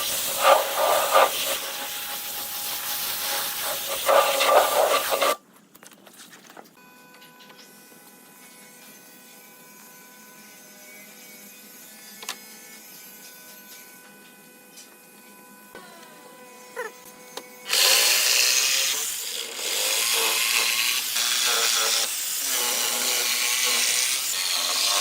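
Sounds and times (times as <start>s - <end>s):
power tool hissing: 0.0s - 5.4s, 17.6s - 25.0s.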